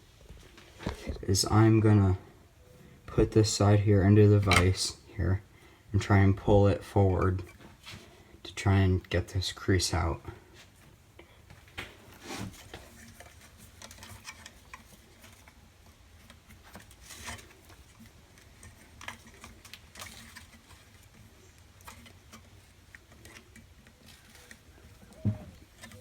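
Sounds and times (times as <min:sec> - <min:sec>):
metal frame clicks and scrapes: 0:12.0 - 0:26.0.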